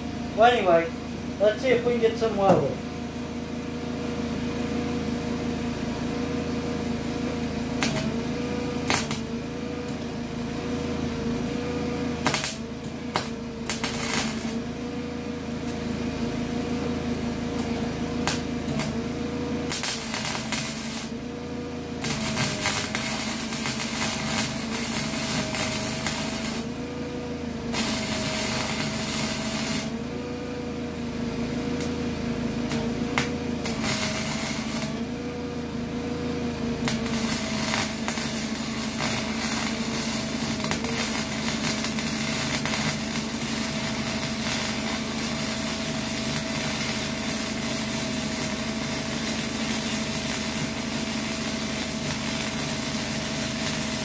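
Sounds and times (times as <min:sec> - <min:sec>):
welder arc crackling: 0:00.0 - 0:02.9, 0:07.7 - 0:10.1, 0:12.2 - 0:14.8, 0:17.5 - 0:21.2, 0:22.0 - 0:26.8, 0:27.7 - 0:30.0, 0:31.6 - 0:32.0, 0:32.7 - 0:35.2, 0:36.8 - 0:54.0
wavering machine hum: 0:00.0 - 0:53.9.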